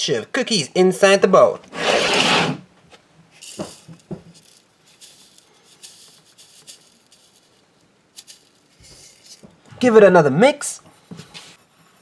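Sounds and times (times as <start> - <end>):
crumbs pattering into a bowl: 3.4 - 9.6.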